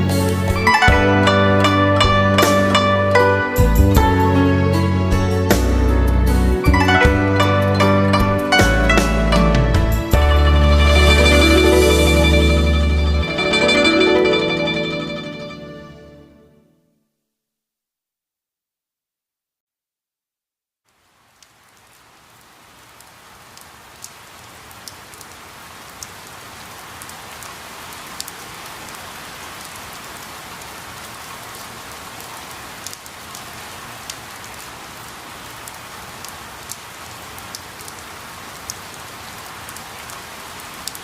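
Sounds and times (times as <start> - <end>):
steady rain hiss: 0.0 - 15.7, 20.8 - 41.0
sharp raindrop ticks: 20.9 - 30.7, 31.6 - 34.7, 35.5 - 41.0.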